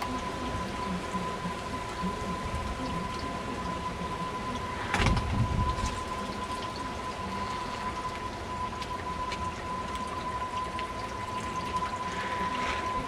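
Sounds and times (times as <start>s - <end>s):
heavy rain falling: 0.0s - 13.0s
thunder rumble: 4.1s - 6.6s.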